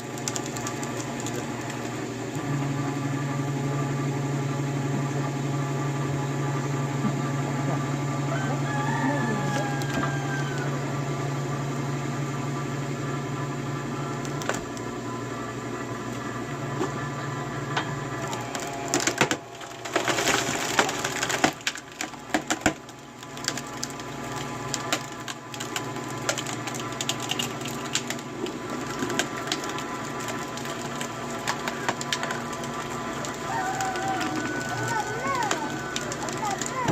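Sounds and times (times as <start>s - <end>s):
wood cracking and splintering: 0.0s - 2.4s, 8.7s - 10.7s, 14.1s - 14.9s, 18.2s - 36.9s
steady hum: 10.2s - 36.9s.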